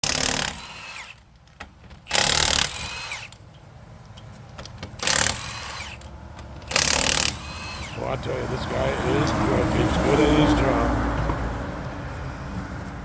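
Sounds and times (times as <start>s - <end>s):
impact wrench whirring: 0.0s - 1.3s, 2.1s - 3.4s, 5.0s - 8.0s.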